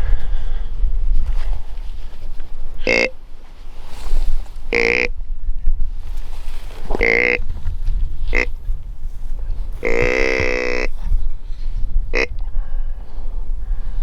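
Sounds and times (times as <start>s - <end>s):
low wind rumble: 0.0s - 14.0s
deer grunt call: 2.8s - 3.2s, 4.7s - 5.1s, 6.9s - 7.4s, 9.8s - 11.0s.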